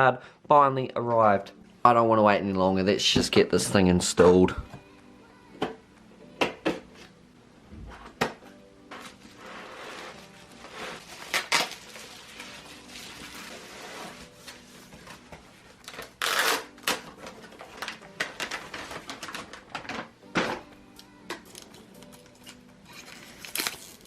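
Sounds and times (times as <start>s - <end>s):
cardboard packaging rustling: 9.0s - 19.9s.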